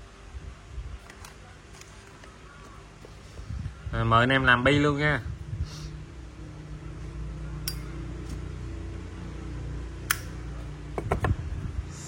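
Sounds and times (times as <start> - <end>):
sharp clicks: 10.0 - 10.4.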